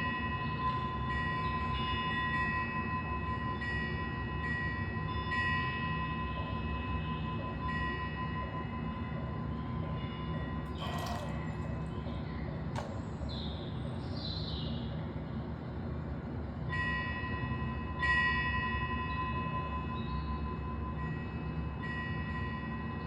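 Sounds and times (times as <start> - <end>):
small metal bell ringing: 10.7 - 11.9.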